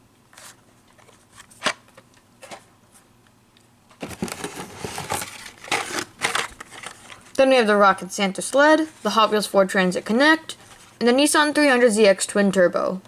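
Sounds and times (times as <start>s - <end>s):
plastic packaging clicks and rustling: 3.9s - 7.4s.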